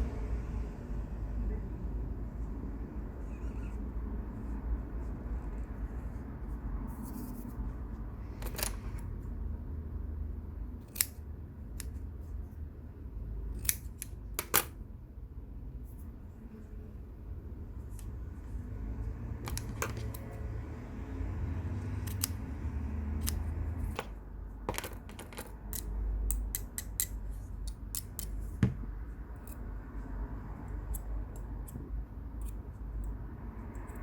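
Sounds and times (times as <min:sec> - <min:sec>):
small metallic tool clicks: 0:10.9 - 0:11.2, 0:22.0 - 0:22.4, 0:25.6 - 0:28.4.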